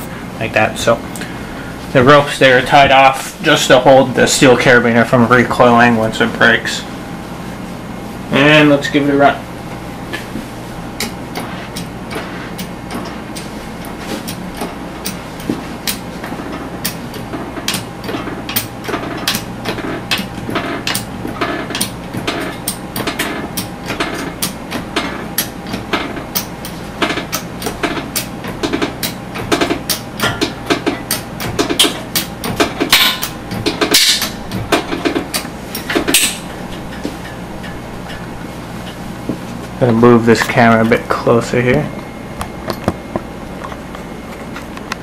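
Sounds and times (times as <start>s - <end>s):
mechanical hum: 0.0s - 45.0s
sharp clicks and knocks: 11.0s - 39.5s, 42.4s - 45.0s.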